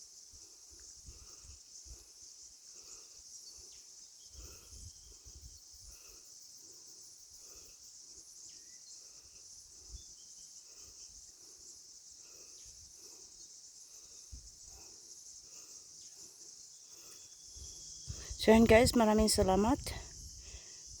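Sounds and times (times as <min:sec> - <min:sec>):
insects chirring: 0:00.0 - 0:21.0
faint bird chirps: 0:00.7 - 0:19.2.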